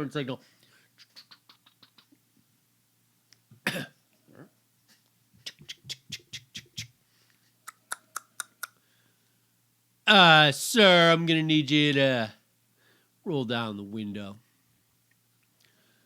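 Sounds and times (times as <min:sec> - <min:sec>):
cough-like burst: 0:03.6 - 0:04.5.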